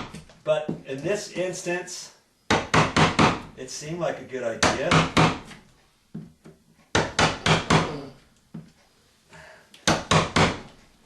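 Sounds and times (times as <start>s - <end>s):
chisel knocking into drywall: 2.5s - 3.5s, 4.6s - 5.6s, 6.9s - 7.9s, 9.8s - 10.8s.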